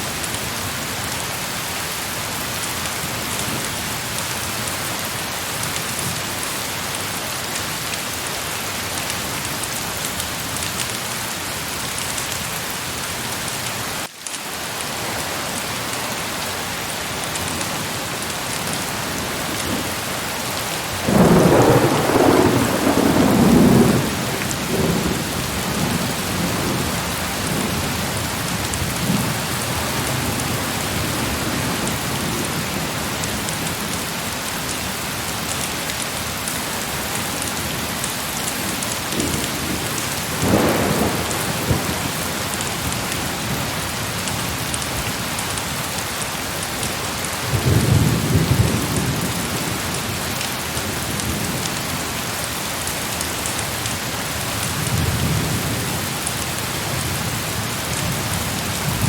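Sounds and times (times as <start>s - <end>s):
heavy rain beating: 0.0s - 59.0s
thunder rumbling: 20.9s - 33.0s, 38.6s - 43.8s.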